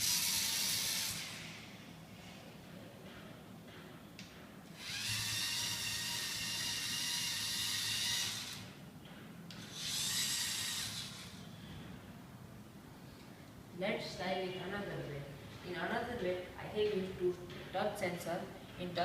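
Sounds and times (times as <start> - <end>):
toy car motors whining: 0.0 - 1.6, 4.8 - 8.7, 9.6 - 11.4.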